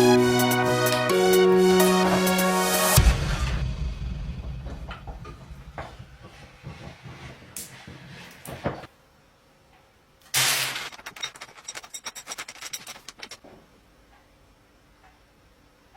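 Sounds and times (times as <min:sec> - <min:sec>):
sudden rush of noise: 0:03.0 - 0:06.2
small hard parts clicking and rattling: 0:10.4 - 0:13.5.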